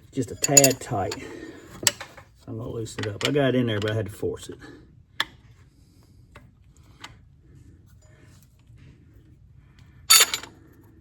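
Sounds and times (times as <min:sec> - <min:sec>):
sharp metal clank: 0:10.1 - 0:10.4.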